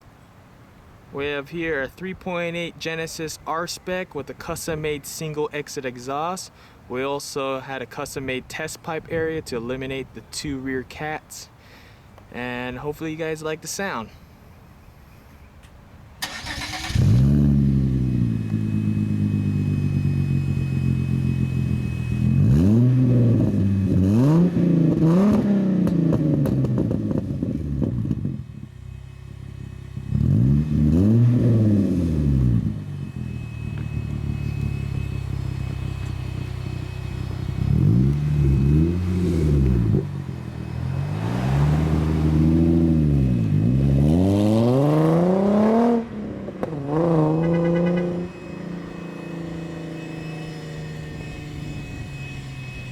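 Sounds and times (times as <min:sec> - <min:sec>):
car engine revving: 0:16.2 - 0:52.9
car engine starting up: 0:16.2 - 0:52.9.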